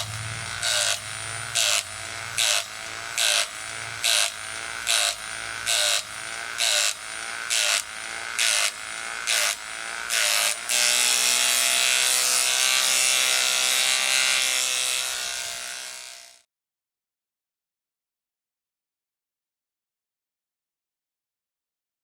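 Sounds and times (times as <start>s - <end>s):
wood chipper chipping wood: 0.0s - 14.4s
electric motor whining: 0.0s - 16.4s.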